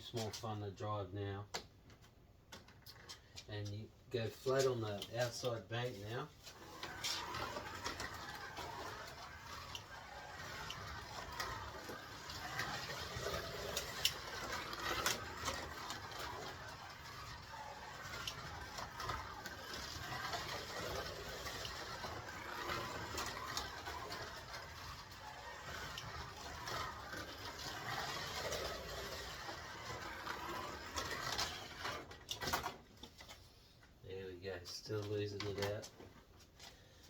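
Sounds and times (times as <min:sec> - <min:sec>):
slot car motor whirring: 0:06.5 - 0:32.6.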